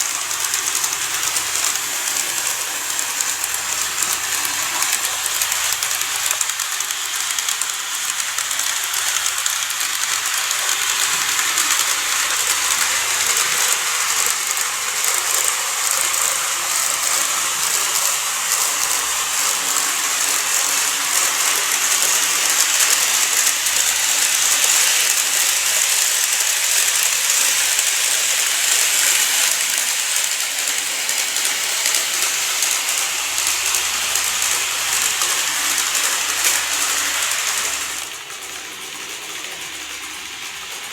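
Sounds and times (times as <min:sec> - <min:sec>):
model train rolling hiss: 0:00.0 - 0:40.9.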